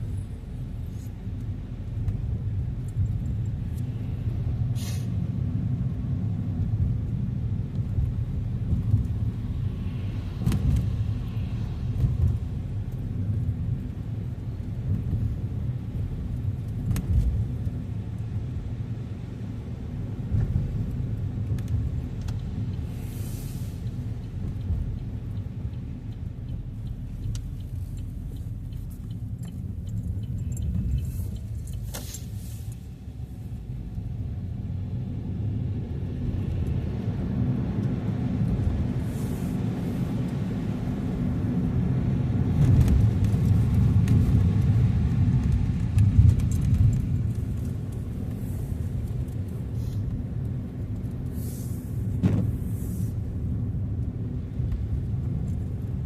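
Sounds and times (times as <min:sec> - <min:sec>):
car cabin road rumble: 0:00.0 - 0:56.0
short hiss: 0:04.8 - 0:05.2, 0:22.9 - 0:23.8.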